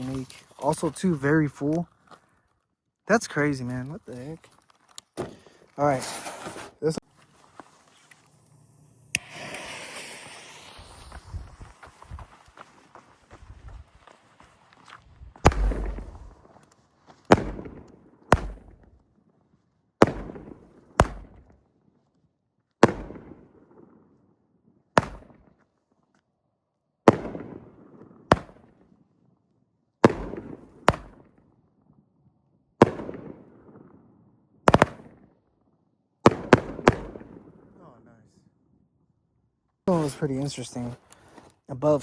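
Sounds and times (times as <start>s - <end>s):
fireworks bangs echoing: 15.4s - 16.4s, 17.3s - 18.8s, 20.0s - 21.4s, 30.0s - 31.3s, 32.8s - 33.4s, 34.7s - 35.2s, 36.3s - 37.6s.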